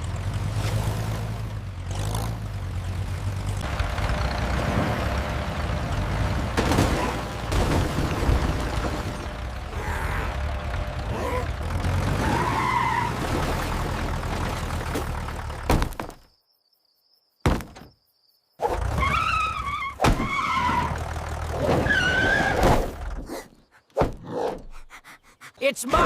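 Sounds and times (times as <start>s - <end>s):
vehicle engine rumbling: 0.0s - 16.4s, 18.8s - 23.3s
thunks: 13.3s - 16.3s, 17.4s - 18.0s, 19.9s - 24.2s.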